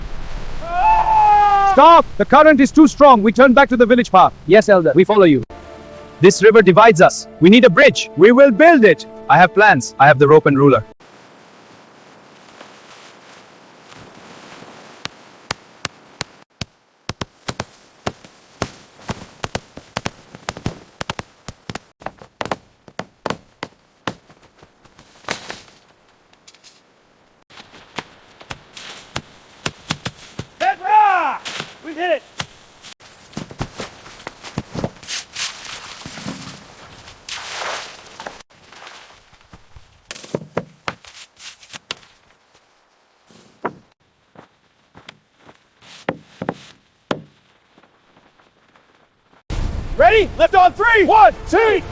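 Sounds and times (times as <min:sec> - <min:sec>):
sharp knocks and thuds: 0:16.6 - 0:24.5, 0:33.3 - 0:35.1, 0:39.7 - 0:41.1, 0:43.4 - 0:44.0, 0:46.0 - 0:47.5.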